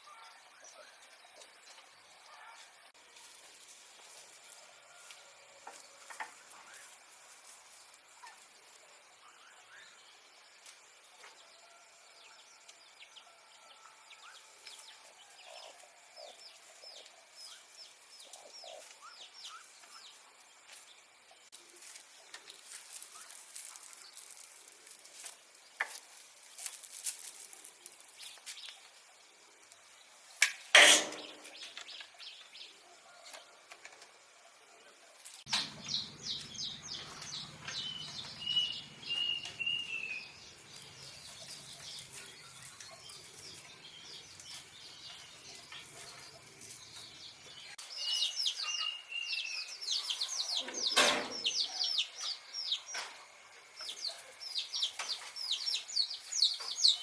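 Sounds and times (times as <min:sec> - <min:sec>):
small birds chirping: 0:13.8 - 0:30.4, 0:34.1 - 0:57.0.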